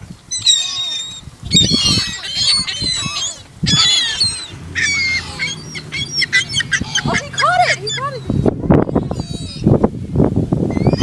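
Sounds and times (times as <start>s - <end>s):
flock of birds calling: 0.2s - 9.8s
low steady hum: 2.9s - 9.2s.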